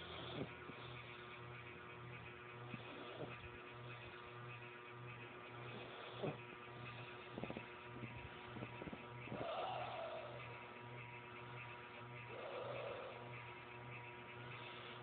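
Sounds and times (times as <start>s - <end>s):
soft snoring: 0.0s - 1.2s, 2.7s - 4.2s, 5.6s - 7.6s, 9.3s - 10.6s, 12.3s - 13.4s
steady low hum: 0.0s - 15.0s.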